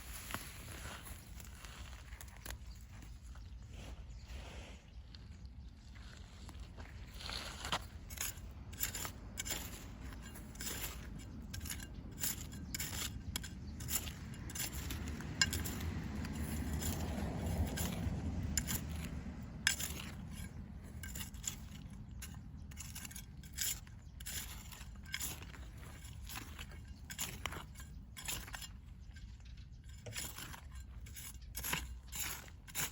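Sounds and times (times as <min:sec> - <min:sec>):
scraping in soil: 0:00.0 - 0:32.9.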